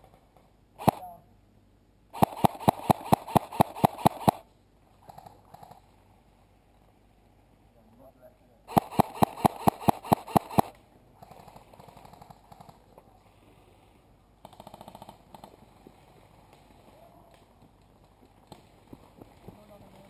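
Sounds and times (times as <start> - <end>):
distant airsoft guns firing: 0.8 - 1.1, 2.2 - 4.4, 8.7 - 10.8.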